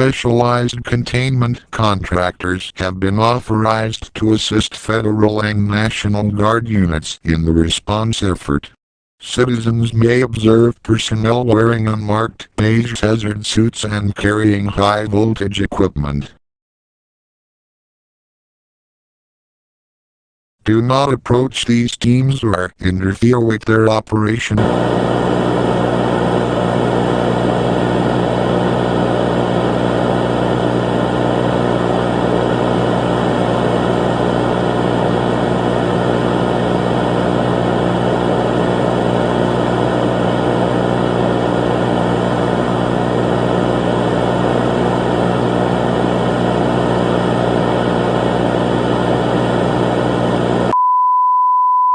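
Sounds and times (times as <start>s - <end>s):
loud low hum: 24.6s - 50.8s.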